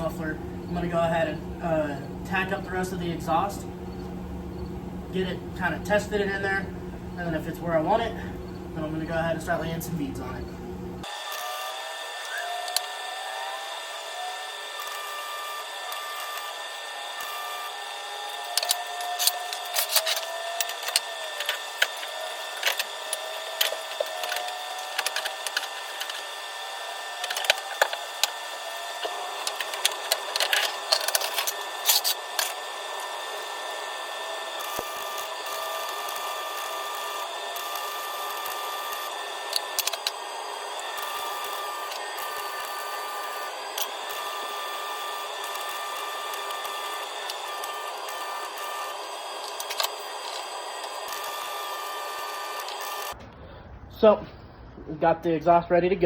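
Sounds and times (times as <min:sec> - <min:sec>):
steady background hum: 0:00.0 - 0:56.0
sharp clicks and crackles: 0:18.2 - 0:26.4, 0:27.0 - 0:33.2, 0:34.6 - 0:40.2, 0:45.4 - 0:53.2.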